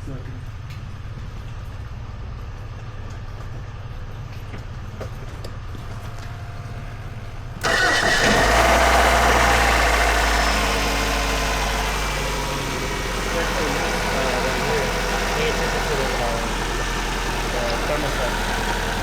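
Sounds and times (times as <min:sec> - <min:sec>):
car engine starting and idling: 0:05.8 - 0:19.0.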